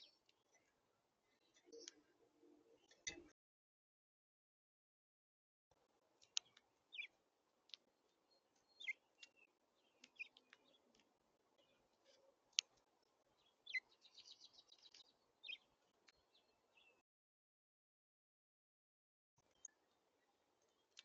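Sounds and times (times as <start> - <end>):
small songbirds chirping: 0.0 - 3.3, 5.7 - 17.0, 19.4 - 21.0
sharp clicks: 6.2 - 6.7.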